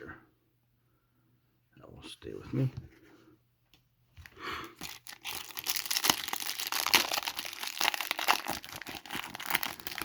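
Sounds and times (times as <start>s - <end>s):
foil wrapper crinkling and tearing: 4.8s - 10.0s.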